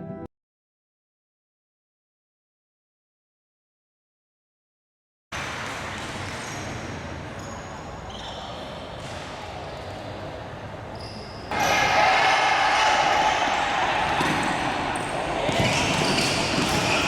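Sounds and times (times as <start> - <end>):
shoe squeaks on court: 5.6 - 10.0, 10.9 - 11.8, 14.2 - 17.0
crowd noise: 6.2 - 17.0
ball bouncing: 14.1 - 17.0.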